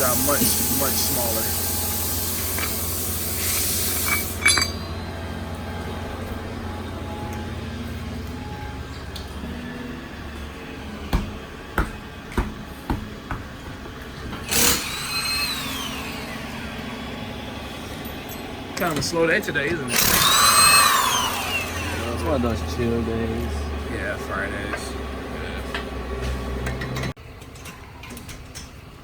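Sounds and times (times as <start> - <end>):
compressed air hiss: 0.0 - 4.4
metal clink: 0.0 - 5.2.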